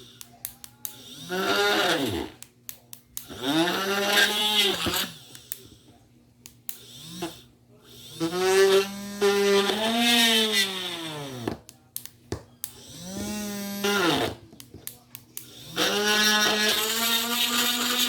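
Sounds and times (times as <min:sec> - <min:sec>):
drill motor whine: 0:03.3 - 0:05.1, 0:08.1 - 0:11.5, 0:12.8 - 0:14.4, 0:15.7 - 0:18.0.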